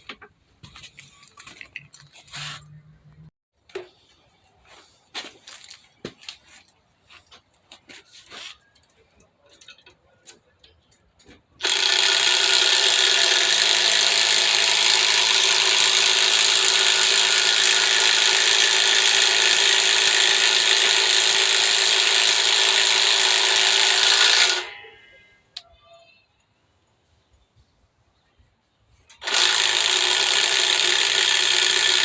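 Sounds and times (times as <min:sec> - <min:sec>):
impact driver rattling: 0:11.6 - 0:24.7, 0:29.2 - 0:32.0.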